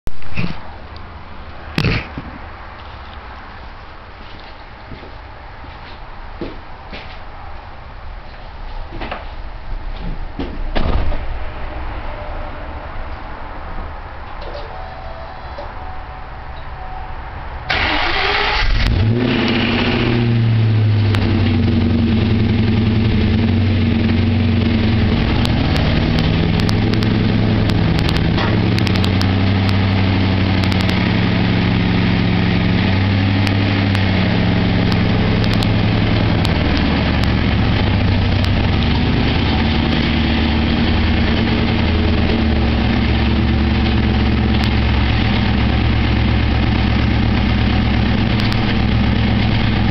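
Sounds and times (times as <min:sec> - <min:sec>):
car engine idling: 0:13.1 - 0:49.9
car engine starter cranking: 0:17.7 - 0:19.6.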